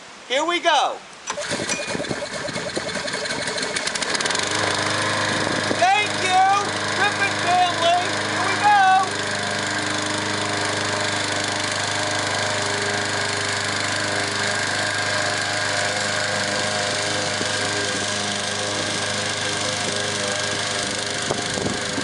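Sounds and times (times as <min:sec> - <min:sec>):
lawn mower engine running: 0:01.2 - 0:22.0
voices calling out: 0:05.8 - 0:09.8.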